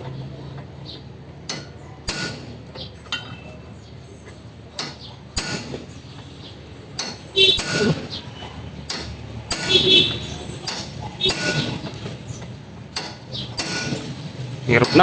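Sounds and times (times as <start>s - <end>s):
hammer striking metal: 7.0s - 8.3s, 8.9s - 11.9s, 12.9s - 14.1s.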